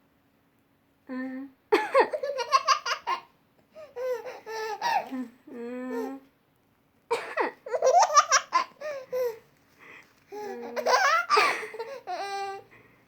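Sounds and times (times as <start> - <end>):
baby laughing and squealing: 4.0 - 5.1.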